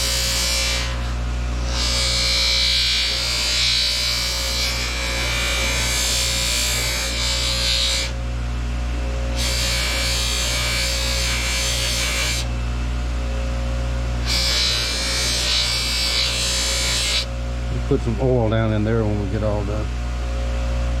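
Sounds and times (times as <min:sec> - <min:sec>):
buffing wheel motor hum: 0:00.0 - 0:03.0.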